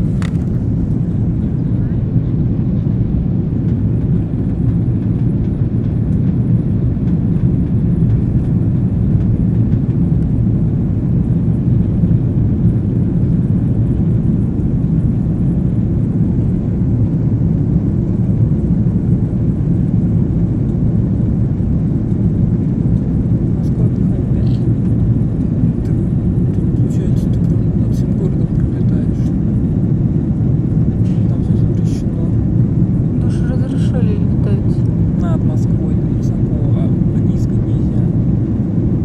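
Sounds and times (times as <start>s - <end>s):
vehicle interior rumble: 0.0s - 1.8s.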